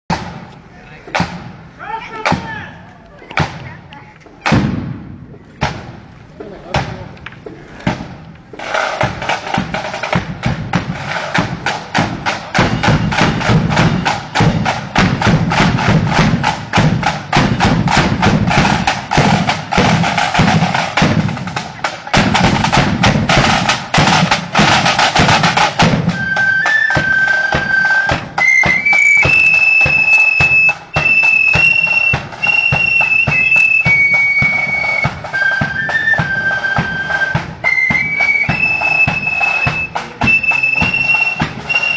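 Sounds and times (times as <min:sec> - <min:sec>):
snare and bass drums: 0:00.1 - 0:41.9
flutes playing high melody: 0:26.0 - 0:41.9.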